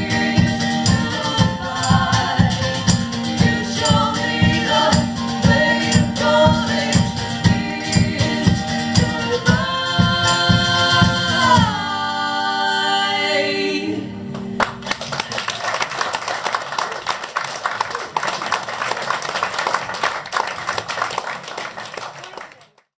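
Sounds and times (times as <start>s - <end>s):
strummed guitar: 0.0s - 11.9s
sung vocal harmonies: 0.0s - 14.6s
audience applauding: 14.6s - 22.9s.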